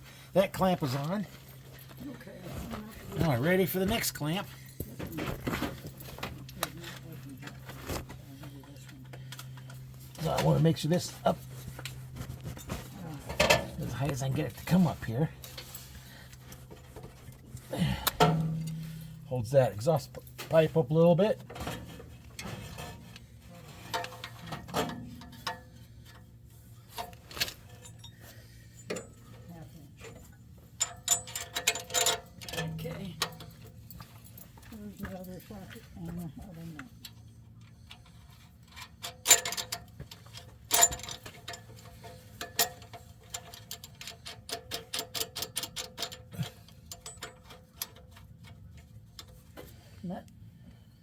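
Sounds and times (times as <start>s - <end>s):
sharp metal clanks: 18.0s - 19.4s
metallic clicks of hand tools: 38.7s - 48.6s.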